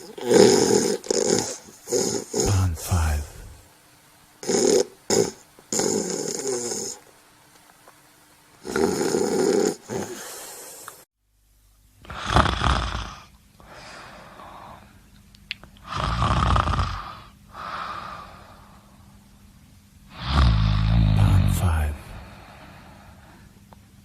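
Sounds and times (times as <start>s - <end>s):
person snoring: 0.0s - 3.7s, 4.4s - 7.0s, 8.6s - 11.0s, 12.0s - 14.9s, 15.8s - 18.8s, 20.1s - 22.8s.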